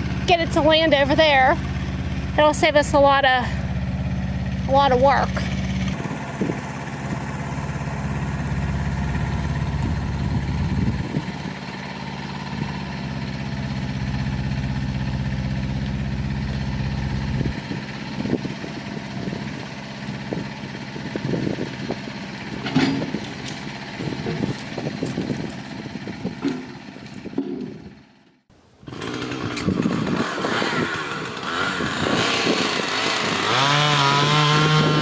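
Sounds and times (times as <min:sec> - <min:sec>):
engine idling: 0:00.0 - 0:35.0
knocks and thumps: 0:26.4 - 0:27.9.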